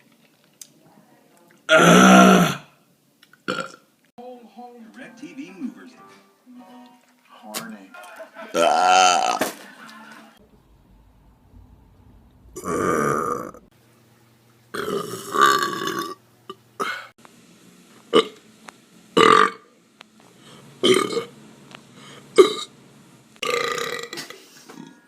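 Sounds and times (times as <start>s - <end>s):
person burping loudly: 1.7s - 2.7s, 3.5s - 3.8s, 8.5s - 9.4s, 12.6s - 13.6s, 14.7s - 17.1s, 18.1s - 18.4s, 19.2s - 19.6s, 20.8s - 21.3s, 22.4s - 22.7s, 23.4s - 25.0s.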